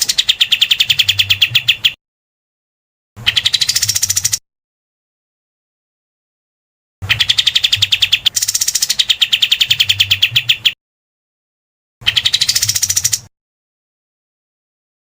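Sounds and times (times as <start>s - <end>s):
songbird harsh rattling trill: 0.0s - 2.0s, 3.2s - 4.4s, 7.1s - 10.8s, 12.0s - 13.3s.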